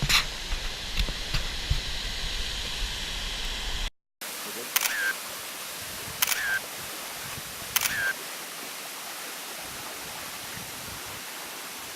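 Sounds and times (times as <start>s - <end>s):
waterfall roaring: 4.2s - 11.9s
sharp clicks: 4.8s - 5.1s, 6.2s - 6.6s, 7.8s - 8.2s.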